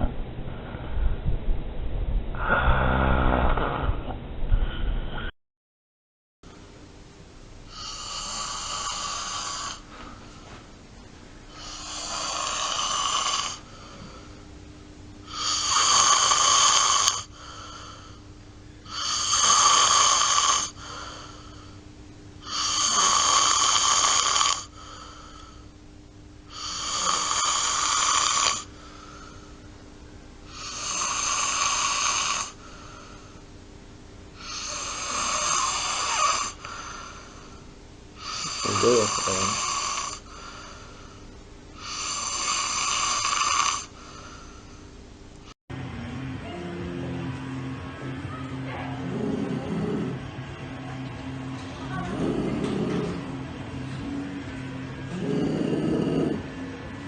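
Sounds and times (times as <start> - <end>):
person snoring: 2.4 - 4.1, 7.7 - 9.9, 11.5 - 14.4, 15.2 - 18.2, 18.8 - 21.8, 22.4 - 25.6, 26.5 - 29.5, 30.5 - 33.4, 34.4 - 37.6, 38.2 - 41.2, 41.8 - 44.8, 48.4 - 57.0
faint steady hum: 6.5 - 57.0.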